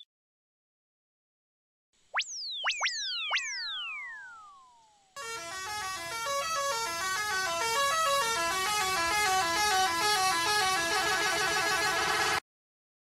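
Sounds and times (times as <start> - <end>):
layered horn sound effect: 5.2 - 12.4.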